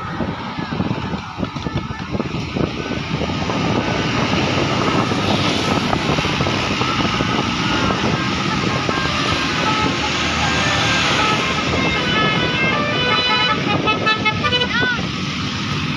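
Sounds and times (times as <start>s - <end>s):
bus engine passing close: 0.0s - 15.9s.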